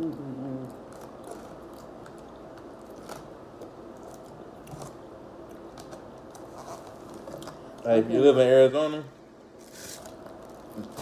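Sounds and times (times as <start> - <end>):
person chewing and crunching: 0.0 - 7.5.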